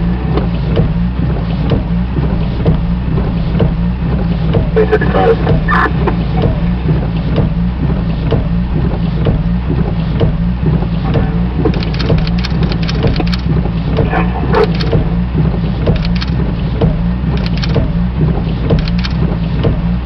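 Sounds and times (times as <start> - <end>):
vehicle engine rumble: 0.0 - 20.0
light clicks and rattles: 11.6 - 15.0, 15.8 - 16.4, 17.3 - 17.9, 18.7 - 19.3.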